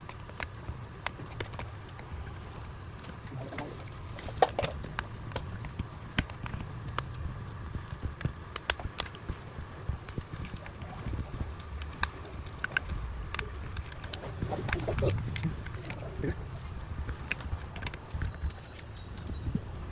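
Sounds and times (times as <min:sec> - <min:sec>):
steady low hum: 0:00.0 - 0:19.9
small tools clicking on glass: 0:17.1 - 0:19.8.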